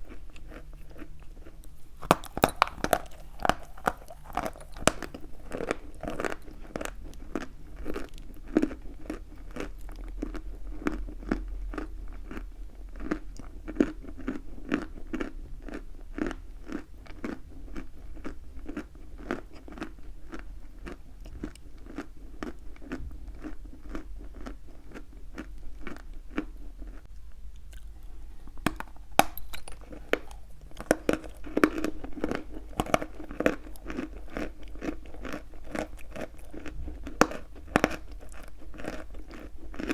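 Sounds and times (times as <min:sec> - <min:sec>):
chalk being chewed: 0:00.0 - 0:10.4, 0:27.6 - 0:39.9.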